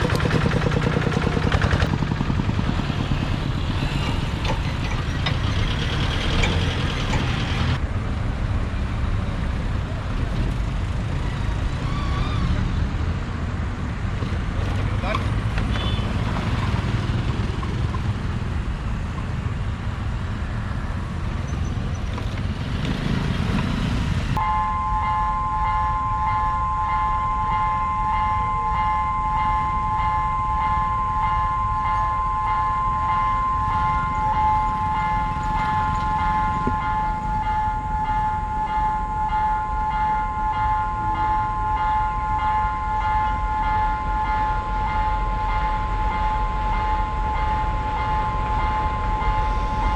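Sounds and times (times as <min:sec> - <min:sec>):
traffic noise: 0:00.0 - 0:49.9
two-tone warning signal pulsing: 0:24.4 - 0:49.9.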